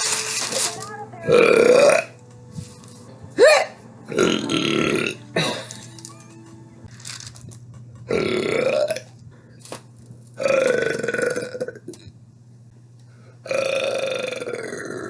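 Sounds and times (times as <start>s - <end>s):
person burping loudly: 1.3s - 2.1s, 3.4s - 5.8s, 8.1s - 9.1s, 10.4s - 12.0s, 13.5s - 15.0s.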